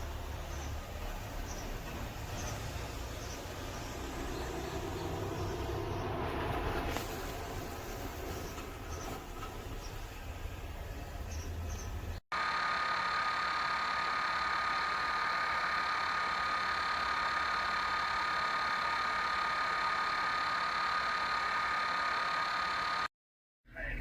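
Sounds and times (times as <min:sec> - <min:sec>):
high steady whine: 0:12.4 - 0:23.1.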